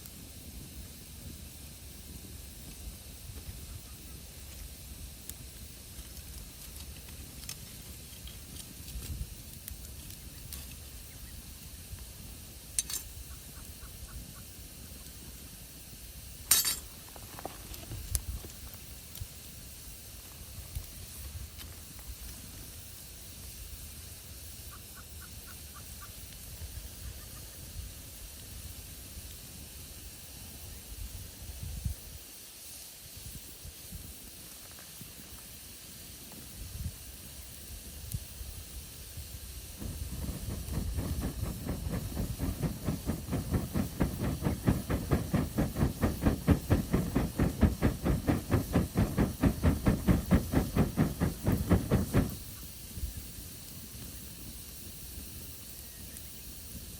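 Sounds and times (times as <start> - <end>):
campfire hissing: 0.0 - 56.9
rhythmic puffing: 39.8 - 52.7.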